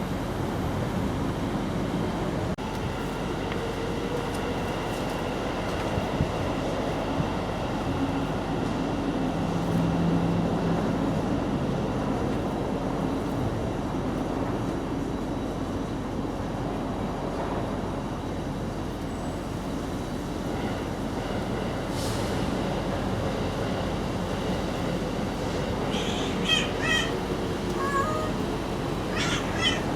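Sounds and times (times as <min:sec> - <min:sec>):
steady rumbling background noise: 0:22.8 - 0:29.9.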